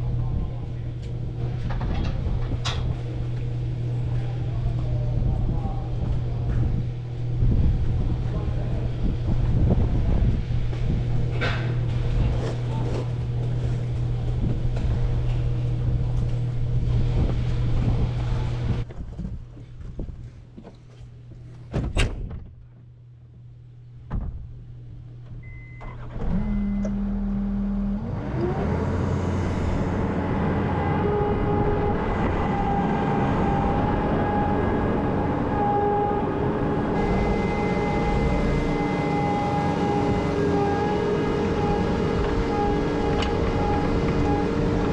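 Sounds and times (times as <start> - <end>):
steady low whine: 0.0 - 19.0, 22.5 - 44.9
vehicle engine running: 26.0 - 44.9.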